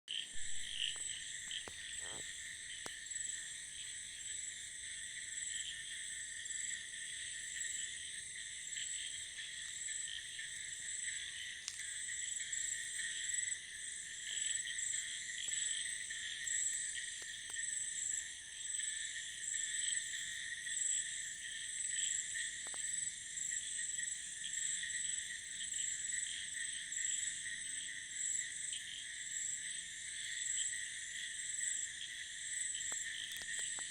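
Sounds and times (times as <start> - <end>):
frogs calling: 0.1 - 3.4
crickets chirping: 0.1 - 33.9.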